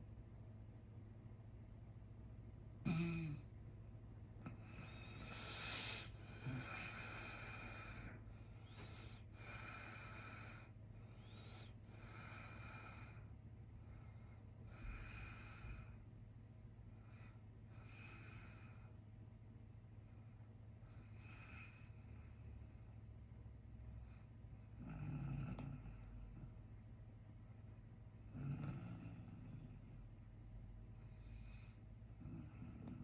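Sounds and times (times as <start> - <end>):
steady low hum: 0.0 - 33.0
man breathing noisily: 4.5 - 16.0.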